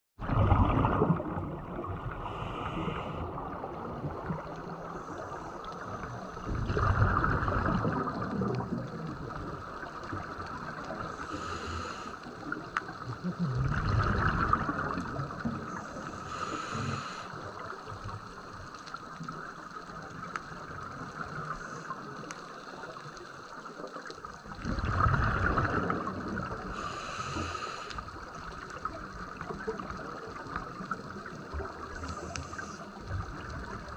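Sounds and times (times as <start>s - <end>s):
gurgling exhaled bubbles: 0.2s - 18.4s, 19.2s - 33.9s
hissing regulator inhalations: 2.2s - 3.3s, 11.2s - 12.3s, 15.7s - 17.4s, 26.7s - 28.0s, 32.0s - 32.9s.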